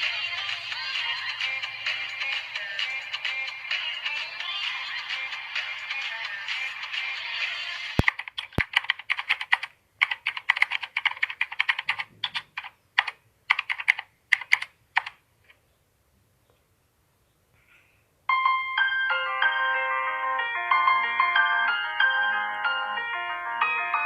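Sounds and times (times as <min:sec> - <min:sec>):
keyboard typing: 0:08.0 - 0:15.6
chiming ringtone melody: 0:18.3 - 0:24.0.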